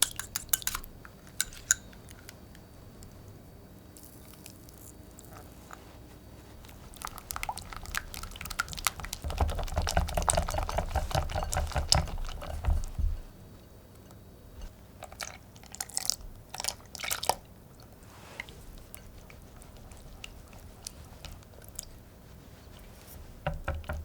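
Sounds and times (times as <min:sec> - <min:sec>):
utensil clicking against bowl: 0:00.0 - 0:03.1.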